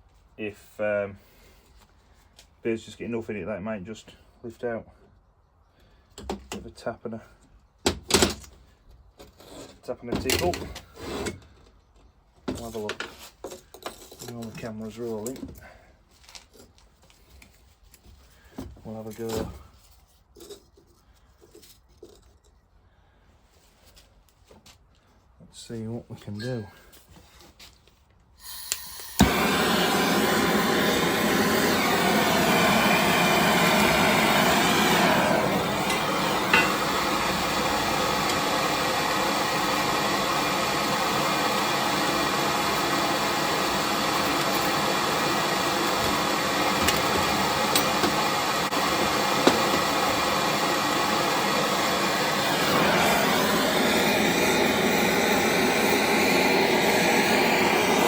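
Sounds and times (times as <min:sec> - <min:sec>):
heating torch roaring: 0:28.4 - 0:58.0.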